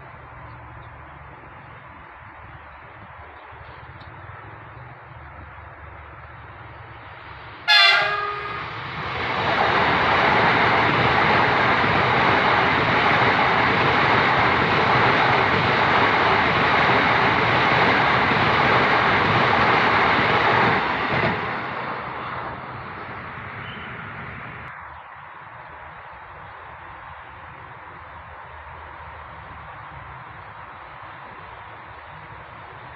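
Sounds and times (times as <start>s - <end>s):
electric train passing: 0.0s - 32.9s
train horn blast: 7.7s - 8.7s.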